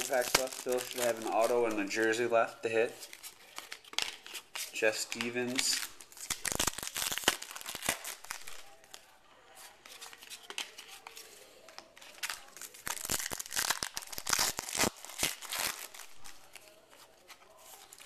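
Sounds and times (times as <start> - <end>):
wrapper crinkling and tearing: 0.0 - 2.1, 3.0 - 9.0, 11.7 - 18.0.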